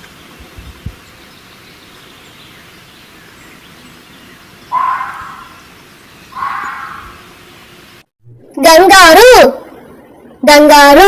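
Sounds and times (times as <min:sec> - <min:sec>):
faint outdoor background noise: 0:00.0 - 0:11.0
fox calling: 0:04.7 - 0:05.7, 0:06.3 - 0:07.4.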